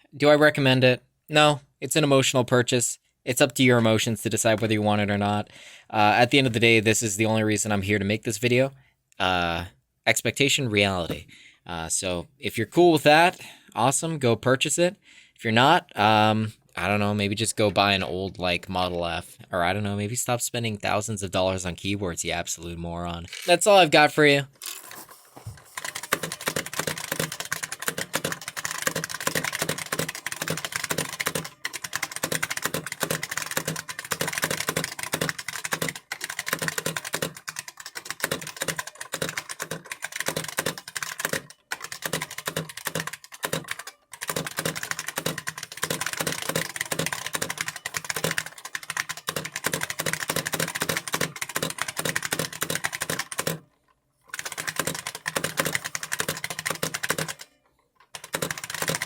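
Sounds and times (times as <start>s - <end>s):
fast keyboard typing clatter: 25.7s - 53.6s, 54.3s - 57.5s, 58.1s - 59.0s.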